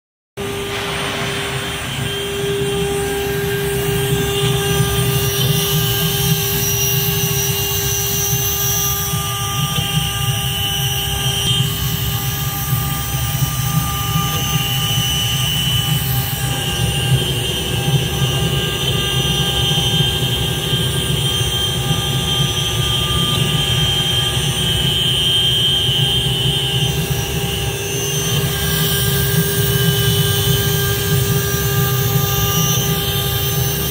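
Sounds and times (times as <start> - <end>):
low mechanical rumble: 0.4 - 6.7
router spindle whine: 0.4 - 33.9.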